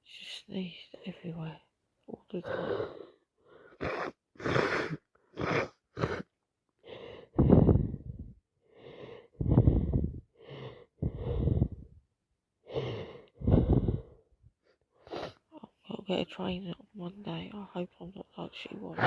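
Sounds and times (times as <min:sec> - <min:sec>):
person sniffing: 0:02.5 - 0:06.3, 0:15.0 - 0:15.4
breathing through blocked nose: 0:06.8 - 0:11.9, 0:12.6 - 0:14.2, 0:15.0 - 0:15.4.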